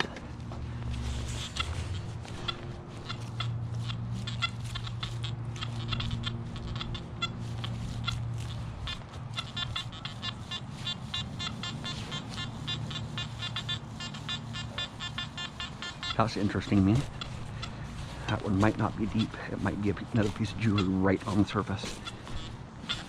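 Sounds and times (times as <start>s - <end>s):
metal detector beeps: 1.0s - 7.7s.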